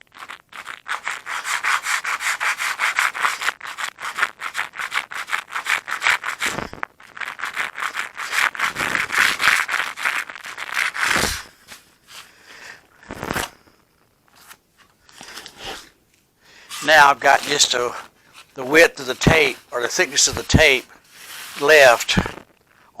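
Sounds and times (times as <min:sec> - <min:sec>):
sandpaper rubbing on wood: 0:00.2 - 0:11.5, 0:16.7 - 0:22.2.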